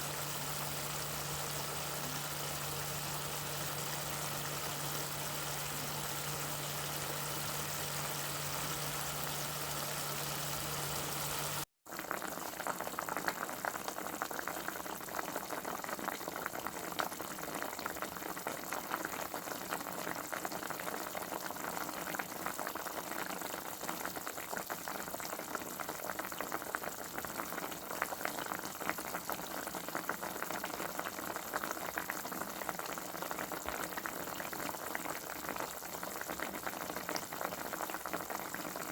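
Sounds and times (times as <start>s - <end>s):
steady hiss with low hum: 0.0s - 11.6s
food crackling on stove: 0.0s - 13.3s.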